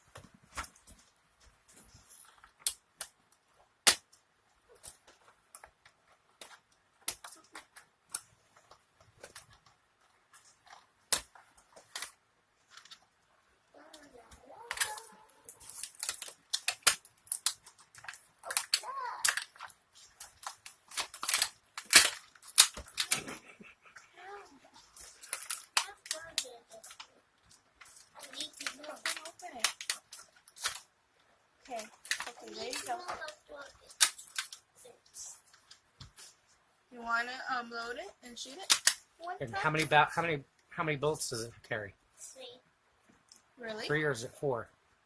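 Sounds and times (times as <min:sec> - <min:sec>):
sharp clicks snaps and crinkles: 0:00.0 - 0:36.6, 0:38.4 - 0:39.9, 0:43.0 - 0:43.6
packaging being torn and handled: 0:14.0 - 0:23.4, 0:27.9 - 0:30.9, 0:31.8 - 0:33.1.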